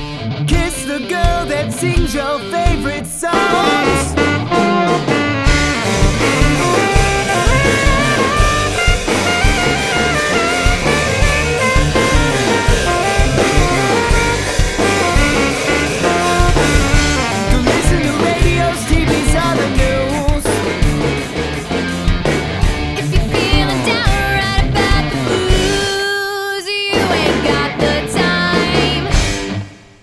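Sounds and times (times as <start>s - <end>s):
bass guitar: 0.0s - 26.0s, 26.9s - 30.0s
drum kit beat: 0.0s - 26.1s, 26.9s - 30.0s
live rock band playing: 0.0s - 30.0s
sliding lead melody: 3.2s - 26.0s.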